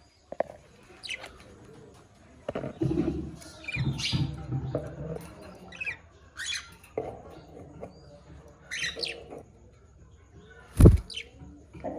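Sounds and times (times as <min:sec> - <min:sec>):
budgerigars chirping: 0:08.7 - 0:09.3.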